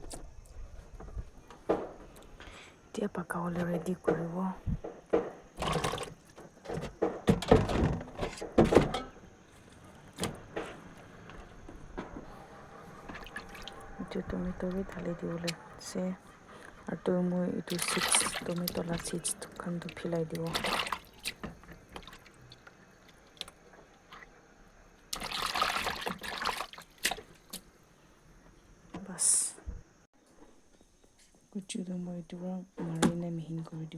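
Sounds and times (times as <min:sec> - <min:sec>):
cookware knocking and clattering: 0:06.7 - 0:09.3.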